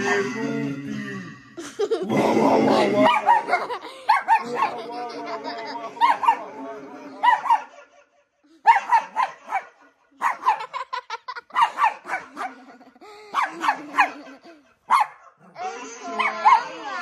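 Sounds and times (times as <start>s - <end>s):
high yipping barks: 3.1s - 4.8s, 6.0s - 6.5s, 7.2s - 7.8s, 8.6s - 10.8s, 11.4s - 12.6s, 13.3s - 14.2s, 14.9s - 15.4s, 16.2s - 16.8s.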